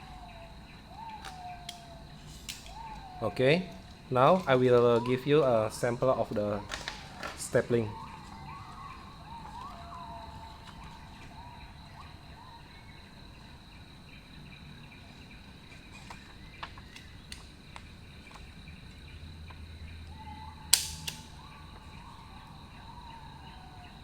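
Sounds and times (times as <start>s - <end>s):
stapler clicks: 20.7s - 21.3s
stapler clack: 20.8s - 21.3s.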